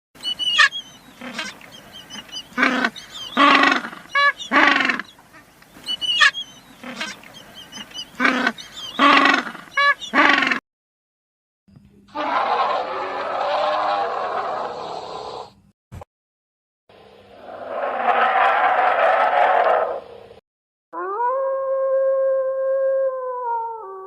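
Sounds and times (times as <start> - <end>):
high chirping bird calls: 0.2 - 10.4
loud animal calls: 0.2 - 10.6, 12.1 - 15.6, 17.3 - 20.3.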